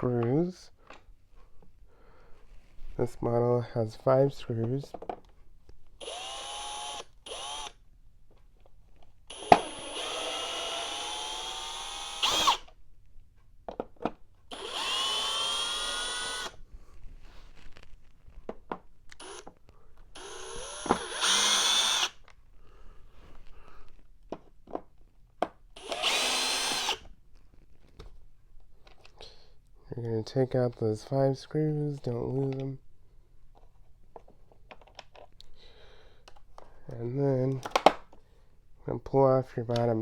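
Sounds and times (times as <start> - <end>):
power drill motor whine: 6.0 - 7.8, 9.3 - 12.7, 14.5 - 16.6, 19.2 - 19.5, 20.2 - 22.2, 25.8 - 27.1.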